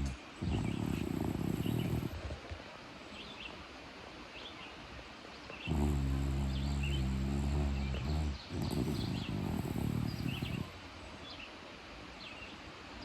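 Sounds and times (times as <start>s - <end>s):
dog snoring: 0.0s - 2.6s, 5.6s - 10.9s.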